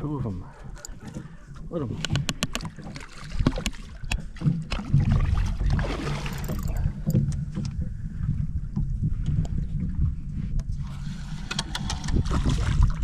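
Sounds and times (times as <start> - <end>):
wind buffeting microphone: 0.0 - 13.0
sharp knocks and clicks: 2.0 - 4.9.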